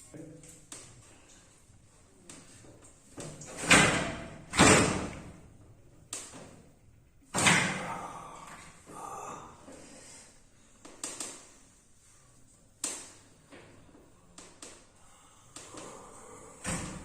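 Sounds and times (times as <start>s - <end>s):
hands slapping a back: 10.8s - 11.5s, 12.8s - 13.2s.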